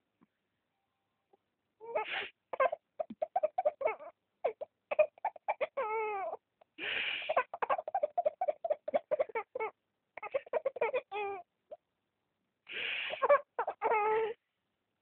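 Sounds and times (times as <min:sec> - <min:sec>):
baby giggling: 0:01.8 - 0:06.4, 0:07.3 - 0:11.4, 0:13.2 - 0:14.4
baby squealing: 0:01.9 - 0:06.4, 0:07.3 - 0:11.4, 0:13.2 - 0:14.4
person sniffling: 0:02.0 - 0:02.4, 0:06.8 - 0:07.5, 0:12.7 - 0:13.3.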